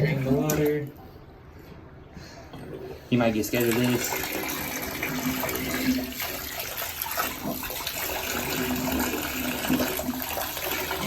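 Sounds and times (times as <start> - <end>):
tap water running into bathtub: 2.5 - 11.0.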